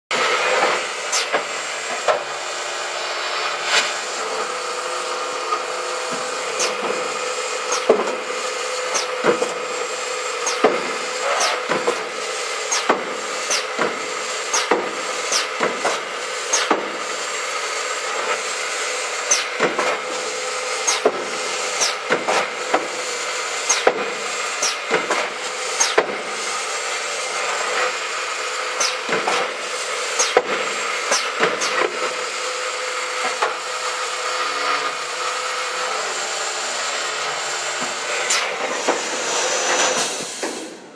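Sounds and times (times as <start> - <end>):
drilling machine hum: 0.1 - 40.9
sharp machine clicks and knocks: 7.7 - 8.2, 8.9 - 9.6, 10.4 - 12.1, 12.7 - 16.9, 20.8 - 22.9, 23.6 - 26.2, 28.8 - 29.5, 30.2 - 31.9.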